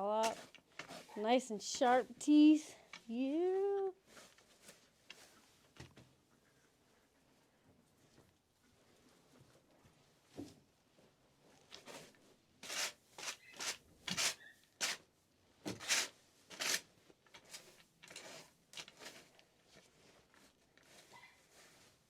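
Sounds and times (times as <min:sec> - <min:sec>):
fork scraping through straw: 0:00.2 - 0:02.0, 0:11.8 - 0:15.0, 0:17.4 - 0:22.0.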